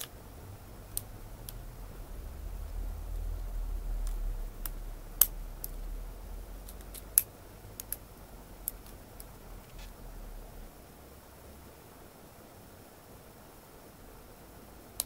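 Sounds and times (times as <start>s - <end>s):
low handling rumble: 0.1s - 10.8s.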